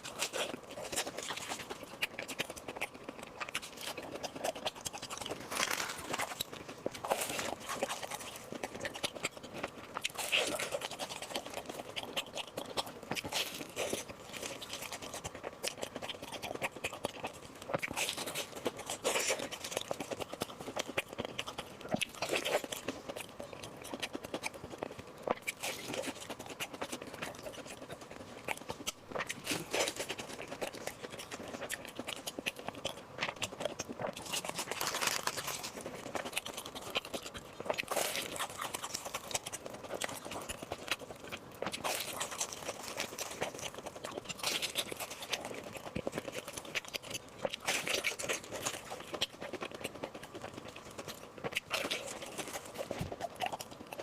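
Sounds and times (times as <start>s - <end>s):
crackly mouth noises: 0.0s - 54.0s
person chewing and crunching food: 0.0s - 54.0s.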